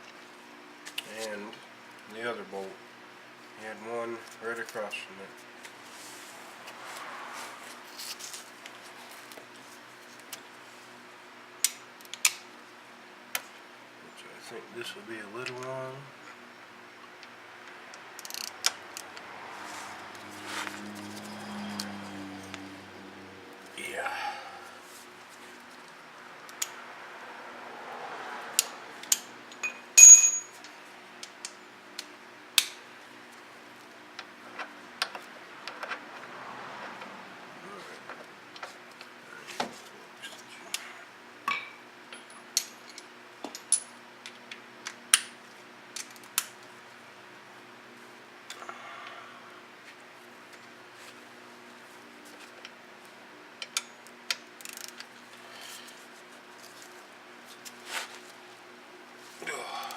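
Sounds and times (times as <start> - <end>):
ringing metallic clank: 29.6 - 30.5
metal tools clinking: 29.6 - 30.6
faint steady hum: 37.3 - 59.9.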